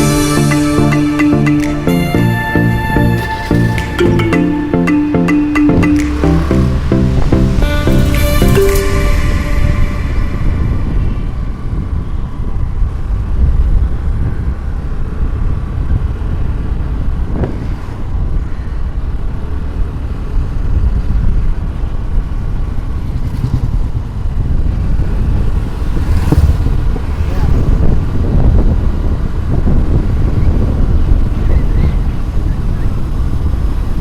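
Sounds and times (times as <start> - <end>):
rising and falling pitch sweep: 0.0 - 12.1
vehicle engine and road noise: 0.0 - 34.0.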